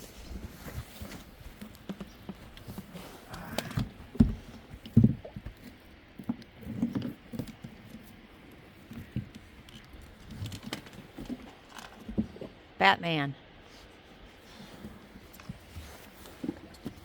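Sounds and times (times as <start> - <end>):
sheep hooves shuffling: 13.7 - 17.0.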